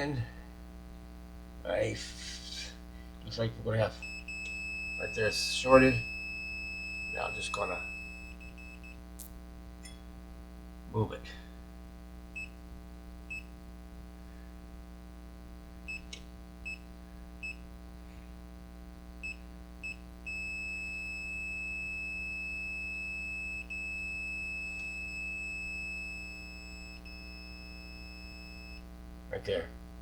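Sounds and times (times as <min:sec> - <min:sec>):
multimeter continuity beeps: 0:03.9 - 0:09.0, 0:19.2 - 0:28.8.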